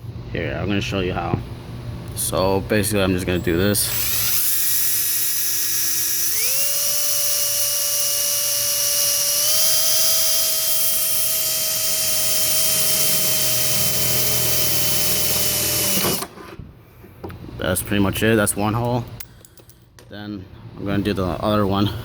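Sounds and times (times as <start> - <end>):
power drill whining: 3.3 - 16.4.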